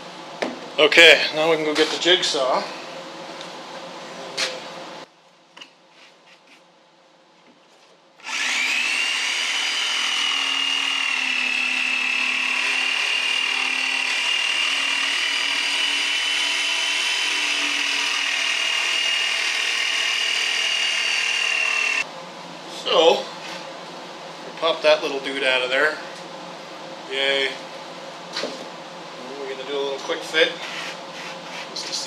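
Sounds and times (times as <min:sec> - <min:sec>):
electric jigsaw cutting wood: 0:08.2 - 0:22.1.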